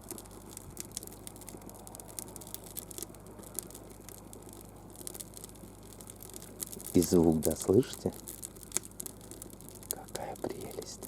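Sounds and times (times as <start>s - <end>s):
campfire crackling and popping: 0.0s - 11.0s
faint steady hiss: 0.0s - 11.0s.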